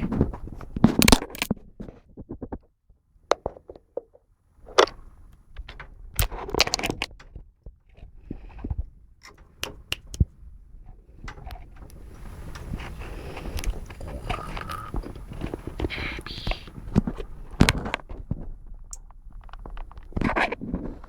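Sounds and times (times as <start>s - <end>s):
clicks and light knocks: 3.3s - 21.0s
scrapes: 11.2s - 21.0s.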